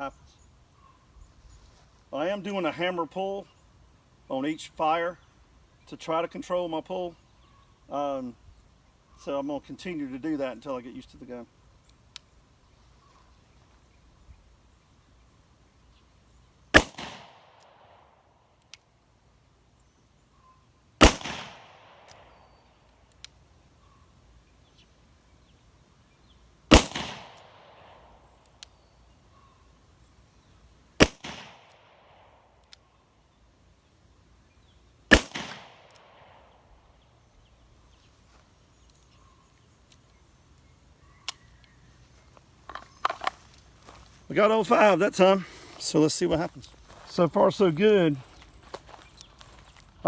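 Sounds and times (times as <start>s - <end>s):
revolver shots with echo: 21.0s - 21.8s, 26.7s - 27.3s, 35.1s - 35.8s.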